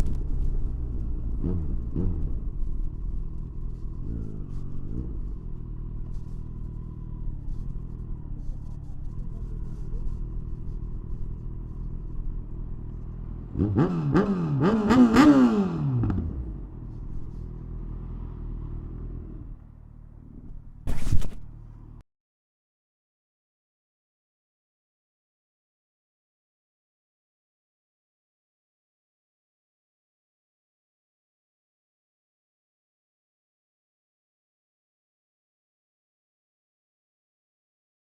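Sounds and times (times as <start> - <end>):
motorcycle engine idling and revving: 0.0 - 22.0.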